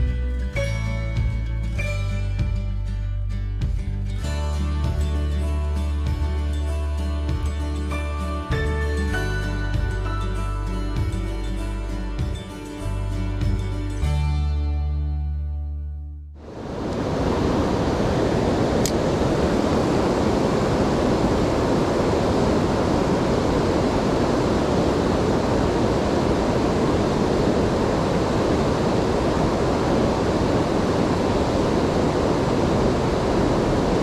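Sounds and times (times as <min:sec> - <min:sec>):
water rushing over weir: 0:16.4 - 0:34.0.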